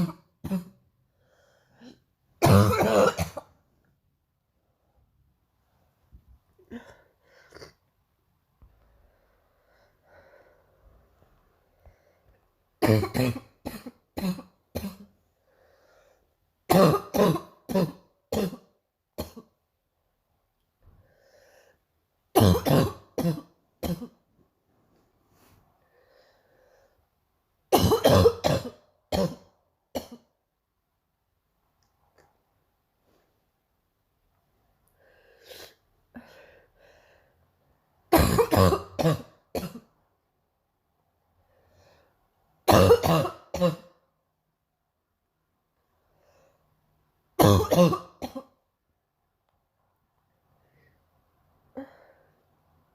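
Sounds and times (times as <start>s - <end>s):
girl coughing: 0.0s - 0.8s, 1.9s - 3.5s, 12.8s - 15.1s, 16.7s - 19.5s, 22.4s - 24.2s, 27.7s - 30.3s, 38.1s - 39.9s, 42.7s - 43.9s, 47.4s - 48.6s
faint breaths: 8.7s - 12.6s, 25.2s - 27.2s.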